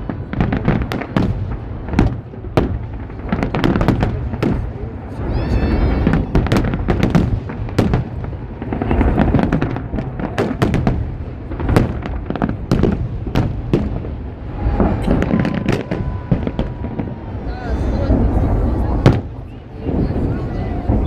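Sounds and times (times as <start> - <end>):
echoing booms rumble: 0.0 - 21.0
fireworks bangs: 0.0 - 21.0.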